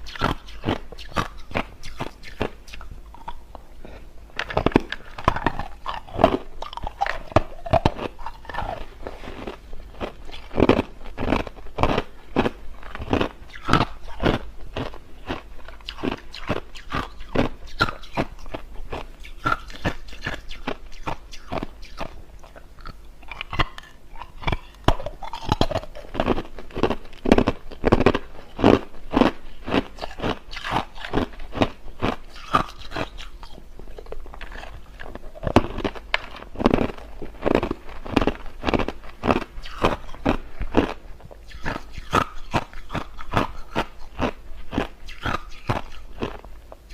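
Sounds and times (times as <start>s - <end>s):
person crunching ice: 35.4s - 41.0s.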